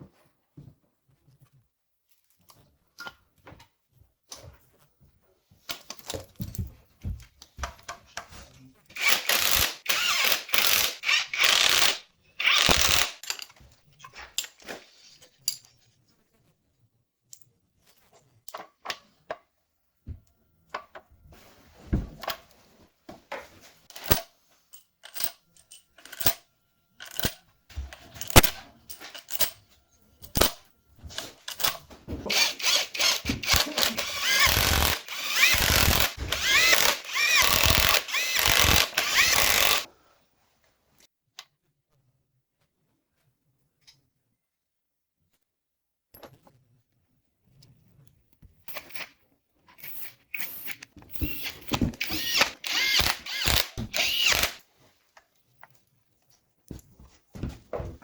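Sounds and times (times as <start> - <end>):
power tool noise: 8.9 - 13.2, 32.3 - 39.9, 51.1 - 54.6.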